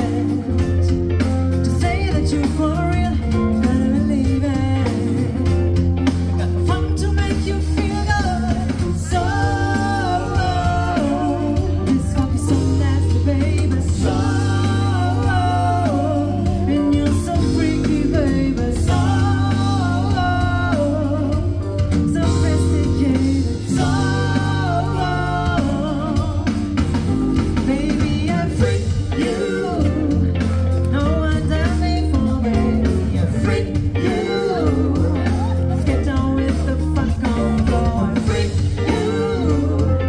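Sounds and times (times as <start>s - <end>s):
live band music: 0.0s - 40.0s.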